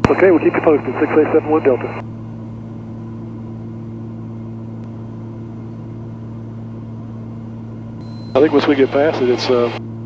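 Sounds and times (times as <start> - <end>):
propeller engines droning: 0.0 - 2.0, 8.3 - 9.8.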